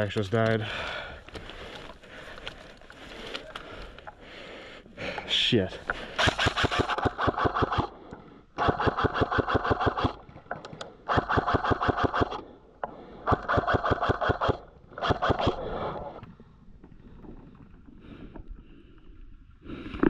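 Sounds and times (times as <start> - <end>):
airsoft rifle firing bursts: 6.1 - 7.9, 8.6 - 10.2, 11.1 - 12.4, 13.3 - 15.6.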